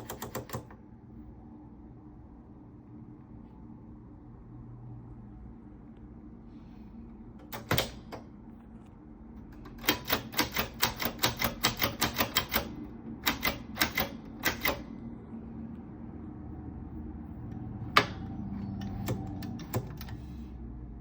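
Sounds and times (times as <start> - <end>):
typewriter keys clacking: 0.0 - 0.7, 9.8 - 14.8.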